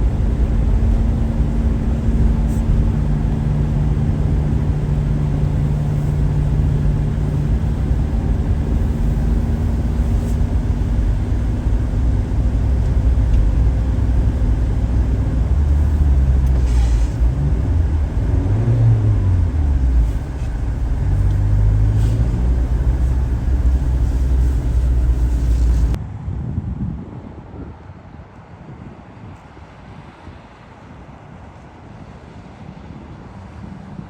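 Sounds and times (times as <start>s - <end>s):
vehicle engine running at low revs: 0.0s - 26.0s.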